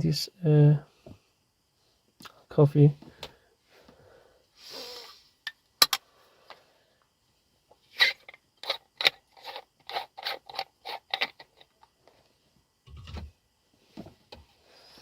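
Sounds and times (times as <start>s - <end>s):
spoon scraping inside container: 8.0s - 11.5s.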